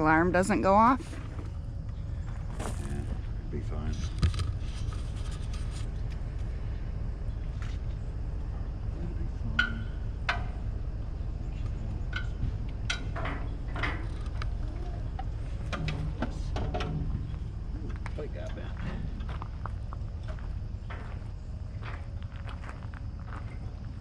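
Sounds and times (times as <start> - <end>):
low rumble: 0.0 - 24.0
sharp knocks and clicks: 9.6 - 10.6, 11.6 - 19.5.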